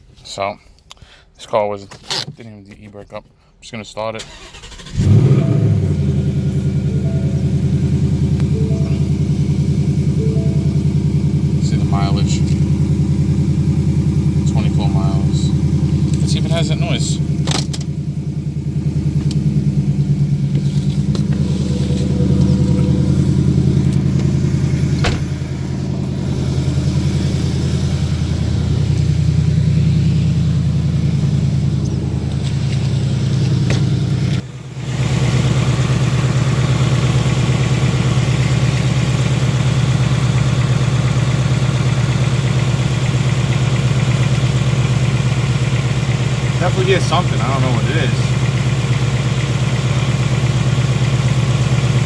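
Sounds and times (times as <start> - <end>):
car engine idling: 4.2 - 52.0
faint engine tick: 4.5 - 34.5.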